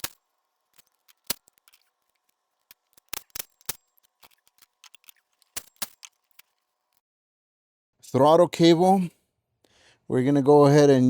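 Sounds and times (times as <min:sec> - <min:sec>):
hand tools clicking and clinking: 0:00.0 - 0:06.7.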